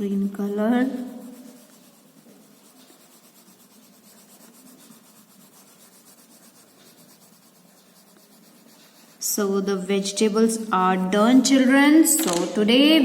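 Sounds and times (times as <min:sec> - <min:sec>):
colouring strokes on paper: 0:00.0 - 0:11.8.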